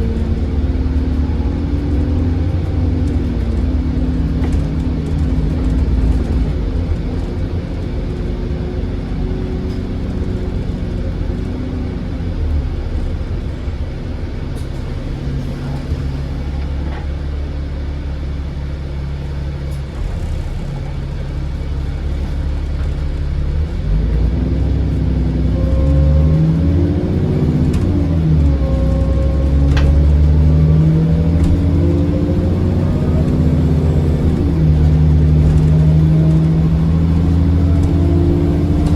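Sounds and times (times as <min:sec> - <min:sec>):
bus diesel engine under load: 0:00.0 - 0:38.9
faint turbocharger whistle: 0:25.4 - 0:26.8.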